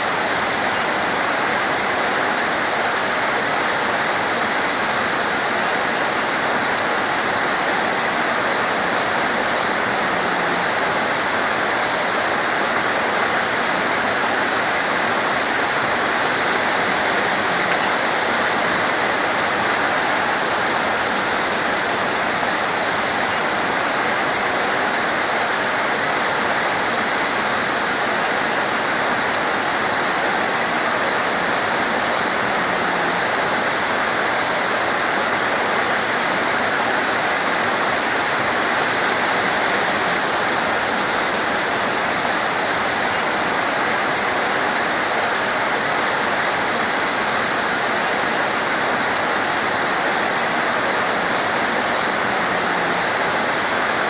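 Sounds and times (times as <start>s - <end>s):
torrential rain hiss: 0.0s - 54.0s.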